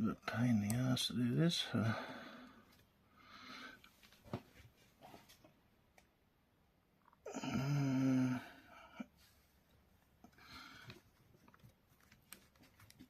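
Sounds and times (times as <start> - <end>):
low voice-like groan: 7.3 - 8.7.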